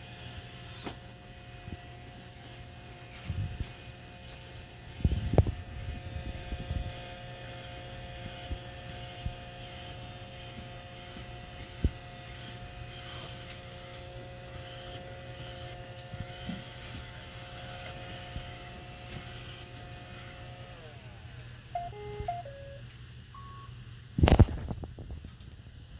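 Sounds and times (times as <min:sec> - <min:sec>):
robot vacuum motor humming: 0:00.0 - 0:22.8
electronic beep tune: 0:21.8 - 0:22.8, 0:23.4 - 0:23.7.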